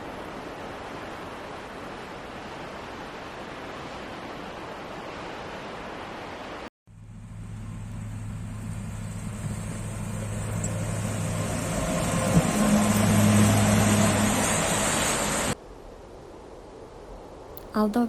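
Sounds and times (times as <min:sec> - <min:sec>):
vehicle engine humming: 0:06.9 - 0:15.6.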